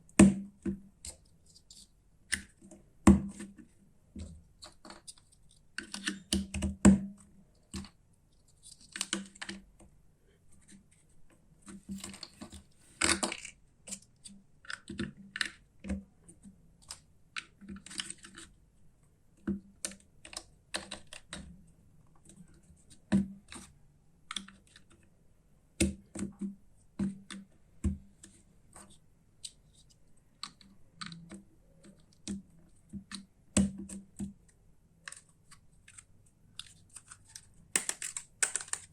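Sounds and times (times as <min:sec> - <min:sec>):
plastic toy parts clicking: 0:35.0 - 0:38.9.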